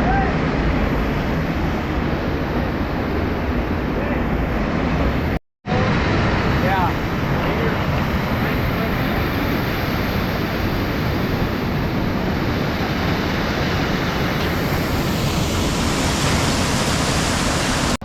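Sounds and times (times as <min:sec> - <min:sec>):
water pouring over waterfall: 0:12.6 - 0:18.0.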